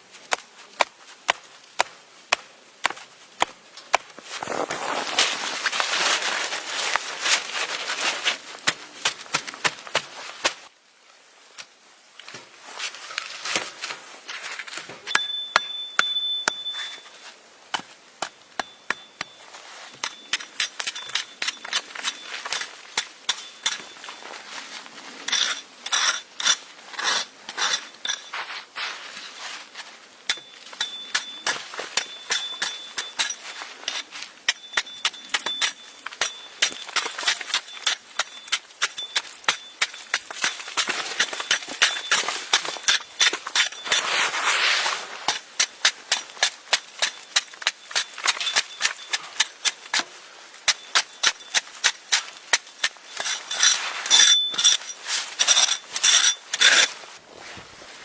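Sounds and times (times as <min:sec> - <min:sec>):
thin high whistle tone: 0:15.2 - 0:17.2.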